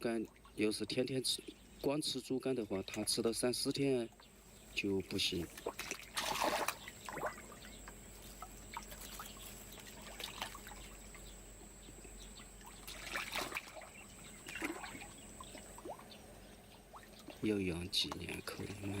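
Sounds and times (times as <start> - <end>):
pond water trickling and lapping: 0.0 - 19.0
water splashes: 2.7 - 11.3, 12.4 - 16.2.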